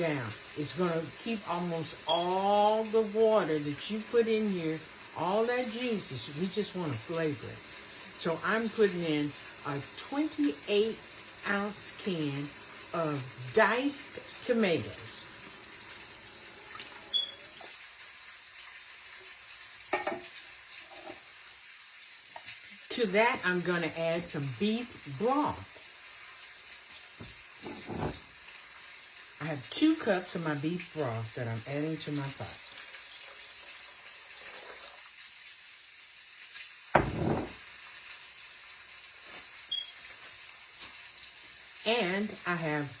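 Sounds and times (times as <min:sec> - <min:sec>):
faint sizzle: 0:00.0 - 0:43.0
can and utensil knocking: 0:19.9 - 0:20.2, 0:37.0 - 0:37.6.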